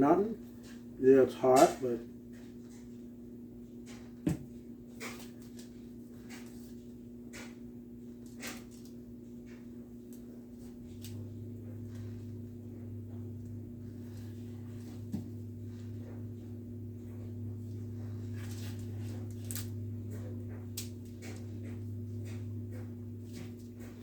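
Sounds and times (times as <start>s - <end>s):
low machine hum: 0.0s - 24.0s
deeper hum: 5.7s - 24.0s.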